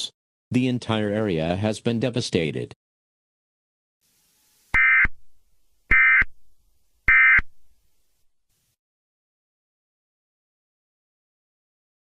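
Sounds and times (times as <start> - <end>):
buzzing data tone bursts: 4.1 - 5.3, 5.9 - 6.3, 7.1 - 7.5.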